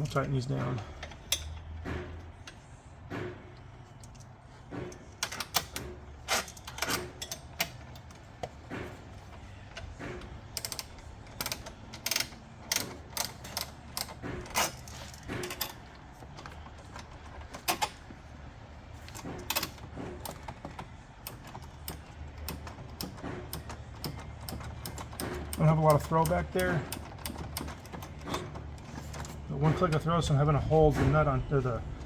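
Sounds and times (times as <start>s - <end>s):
ratchet wrench clicking: 10.6s - 15.8s.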